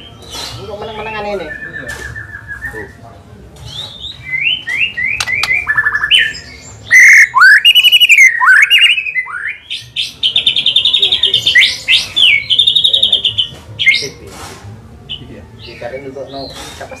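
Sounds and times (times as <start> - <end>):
bird singing varied whistles: 1.3 - 3.0, 3.7 - 9.7.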